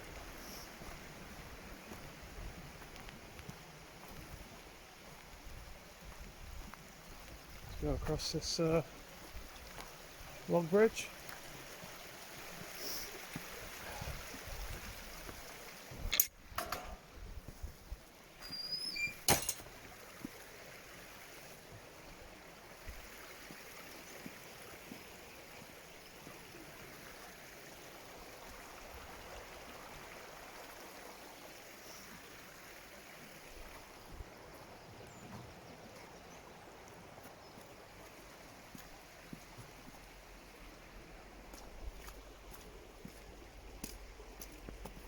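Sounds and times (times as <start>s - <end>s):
stream running: 0.0s - 45.0s.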